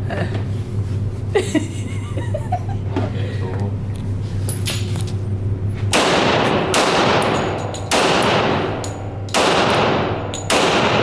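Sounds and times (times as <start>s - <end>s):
echoing gunshots: 5.9s - 11.0s.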